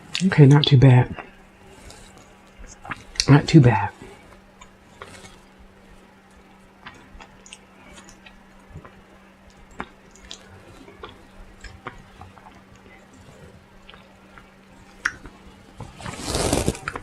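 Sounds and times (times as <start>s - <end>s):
person chewing food: 6.8s - 12.6s.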